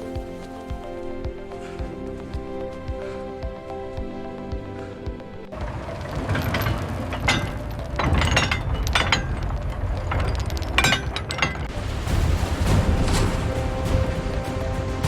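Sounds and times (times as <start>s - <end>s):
steady low rumble: 11.6s - 15.0s.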